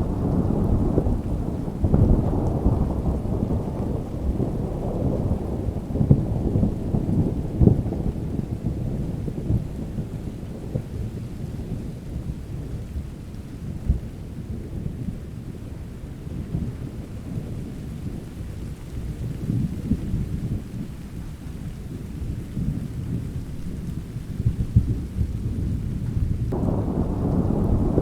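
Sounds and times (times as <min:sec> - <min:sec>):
thunder rumbling: 0:00.0 - 0:12.9, 0:19.2 - 0:28.0
steady rain: 0:00.0 - 0:28.0.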